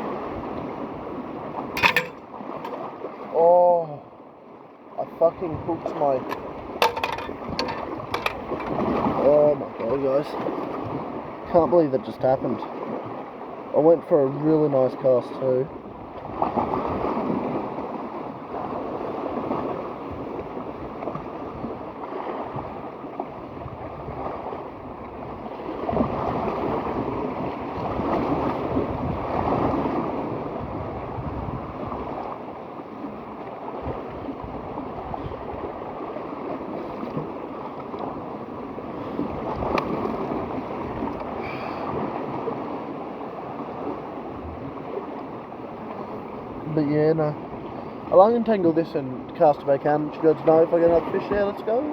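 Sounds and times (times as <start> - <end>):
sea waves washing ashore: 0.0 - 51.9
wind on microphone: 18.6 - 32.4, 33.8 - 37.3.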